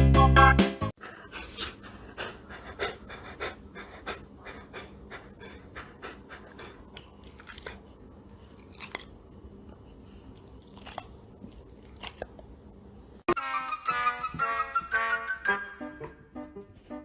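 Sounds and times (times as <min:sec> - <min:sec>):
music with whistle-like melody: 0:00.0 - 0:00.9, 0:13.4 - 0:16.5
pet chewing: 0:01.2 - 0:12.7.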